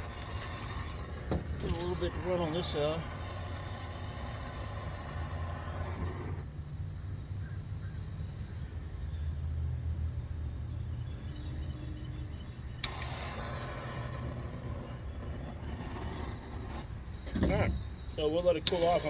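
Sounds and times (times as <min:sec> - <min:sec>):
gas torch hissing: 0:00.0 - 0:07.4, 0:11.5 - 0:19.0
sharp click: 0:18.6 - 0:19.0.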